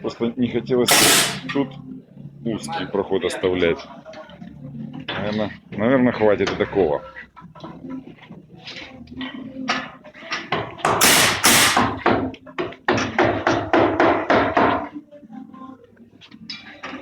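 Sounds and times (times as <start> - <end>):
knocks and taps: 11.8 - 14.9.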